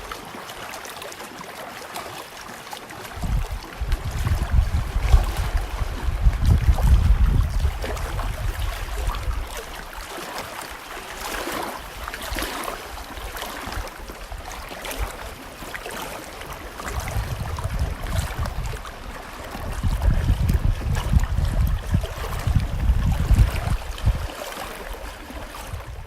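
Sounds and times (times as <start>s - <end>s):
wind gusting against microphone: 3.2s - 10.0s, 16.4s - 26.0s.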